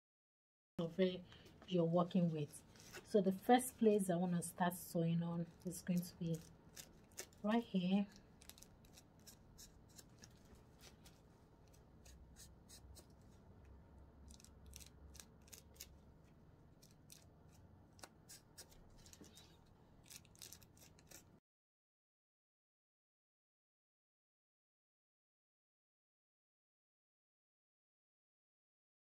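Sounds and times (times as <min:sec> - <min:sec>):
thread rasping through lace: 0:05.4 - 0:13.3, 0:14.3 - 0:16.0.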